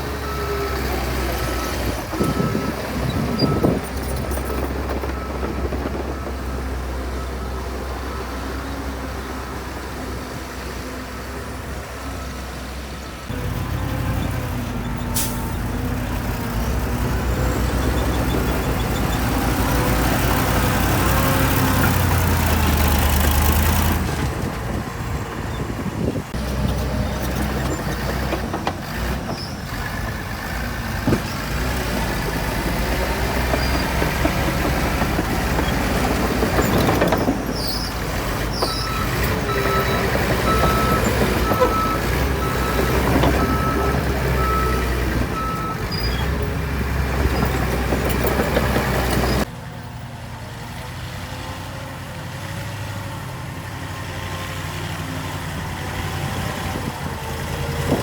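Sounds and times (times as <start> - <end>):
diesel machinery running under load: 0.0 - 58.0
reversing alarm beeping: 1.6 - 3.8, 38.6 - 46.0.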